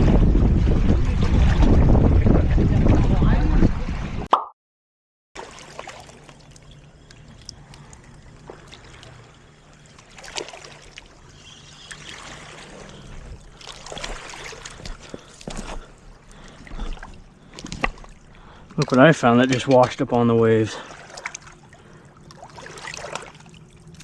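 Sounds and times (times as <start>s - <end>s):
small clicks and splashes: 5.4s - 20.2s, 20.9s - 24.0s.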